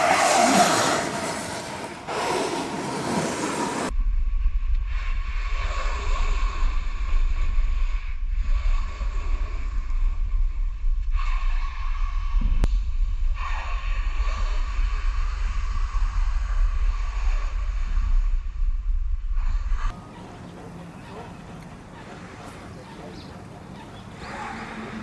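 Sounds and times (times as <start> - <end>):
loud rushing noise: 0.0 - 3.9
sweeping whooshes: 0.0 - 3.9
wind buffeting microphone: 19.9 - 25.0.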